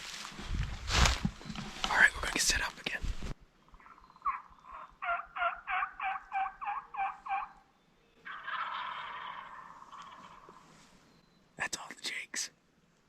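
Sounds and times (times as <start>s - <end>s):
turkey yelping: 3.7s - 7.6s, 8.2s - 10.7s.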